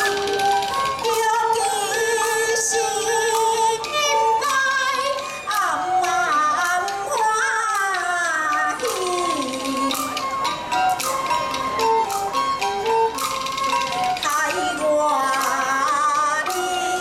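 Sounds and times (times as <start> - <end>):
opera singing with accompaniment: 0.0 - 10.3, 14.1 - 17.0.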